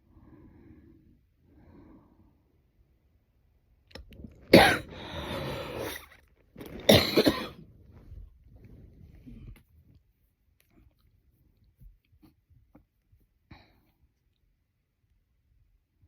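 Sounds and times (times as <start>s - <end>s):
woman coughing: 4.5s - 5.0s, 6.9s - 7.6s.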